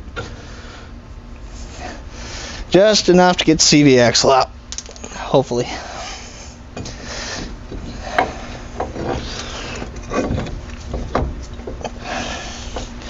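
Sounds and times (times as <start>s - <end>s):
metal parts scraping and rubbing: 5.9s - 11.1s
metal parts knocking: 7.7s - 11.9s.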